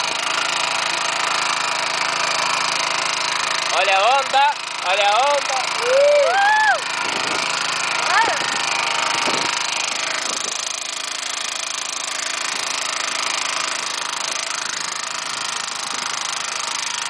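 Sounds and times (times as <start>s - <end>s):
boat engine rattling under load: 0.0s - 17.0s.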